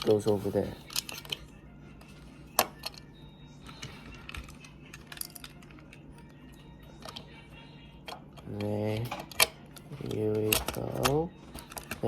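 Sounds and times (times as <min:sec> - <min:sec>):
plastic toy parts clicking: 0:03.7 - 0:06.0, 0:08.0 - 0:12.0.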